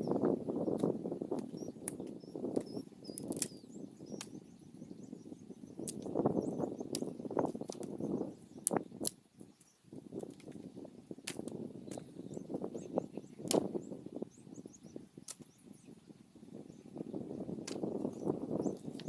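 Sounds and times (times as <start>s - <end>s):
dry sticks snapping: 0.7s - 4.4s, 5.8s - 6.1s, 6.9s - 8.0s, 8.6s - 10.6s, 11.2s - 12.1s, 13.4s - 13.7s, 15.2s - 15.5s, 17.6s - 19.0s.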